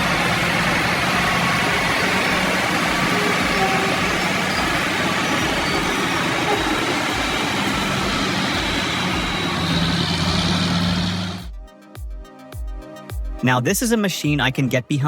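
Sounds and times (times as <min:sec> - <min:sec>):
diesel truck engine running: 0:00.0 - 0:11.5
road and wind noise: 0:00.0 - 0:11.5.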